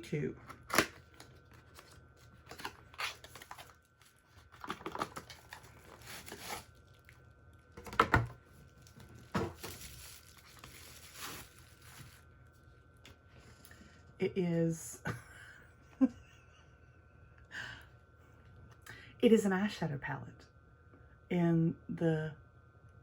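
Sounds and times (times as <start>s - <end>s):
packaging torn and crinkled: 0.6s - 7.9s, 8.6s - 12.2s.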